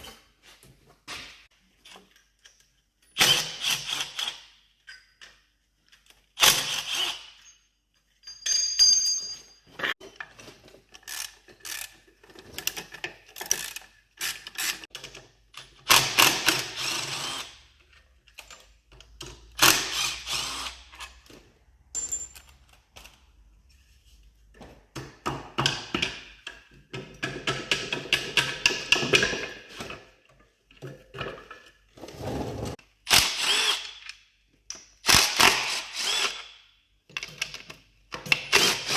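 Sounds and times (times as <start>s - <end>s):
metal clinks and knocks: 7.4s - 10.5s, 21.8s - 23.1s.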